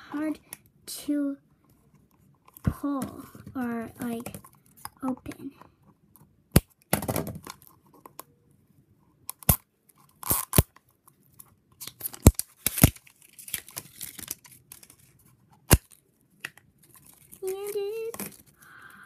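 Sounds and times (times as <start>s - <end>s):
toy packaging being torn and crinkled: 9.3s - 19.0s.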